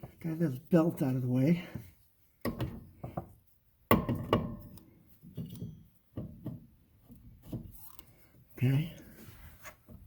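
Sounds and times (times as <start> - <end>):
metal knocks and clunks: 2.4 - 7.8.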